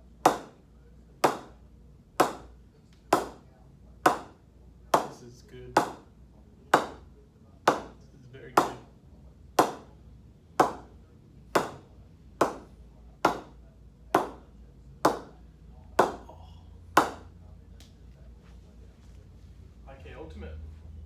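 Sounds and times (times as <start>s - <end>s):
cricket bat struck with knocks: 0.3s - 0.6s, 1.2s - 1.6s, 2.2s - 2.5s, 6.8s - 7.0s, 10.6s - 10.9s, 11.6s - 12.7s, 13.3s - 13.6s, 14.2s - 14.4s.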